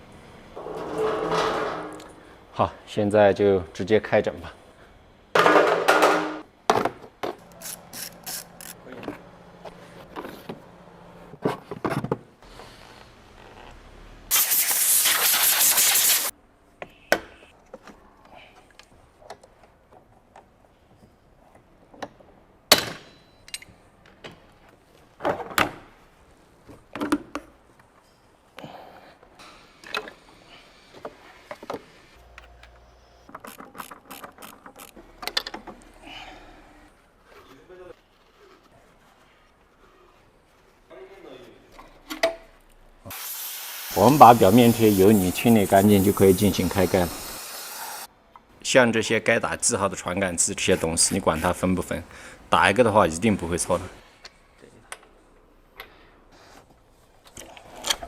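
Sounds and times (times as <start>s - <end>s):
ratchet wrench clicking: 7.6s - 8.8s, 33.4s - 35.0s
loud hiss: 14.3s - 16.3s, 43.1s - 48.1s.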